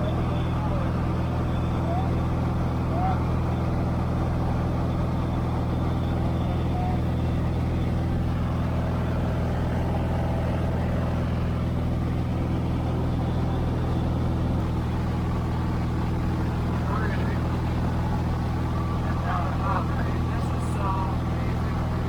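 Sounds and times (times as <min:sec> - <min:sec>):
small plane engine droning: 0:00.0 - 0:22.0.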